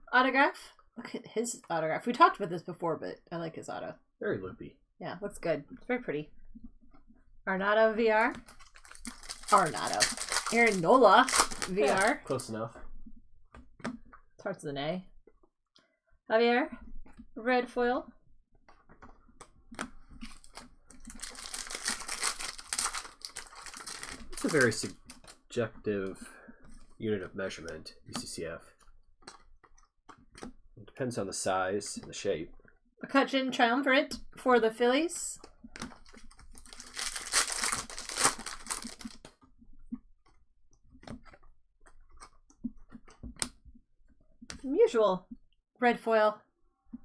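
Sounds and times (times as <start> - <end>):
foil wrappers crinkling: 8.4 - 12.5, 20.2 - 25.4, 36.0 - 39.3.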